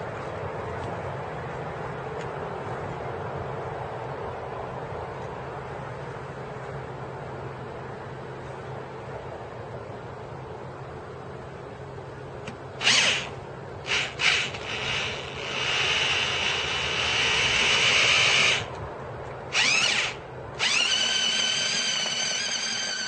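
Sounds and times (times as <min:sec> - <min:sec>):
electric drill mixing mortar: 0:12.8 - 0:18.7, 0:19.5 - 0:23.0.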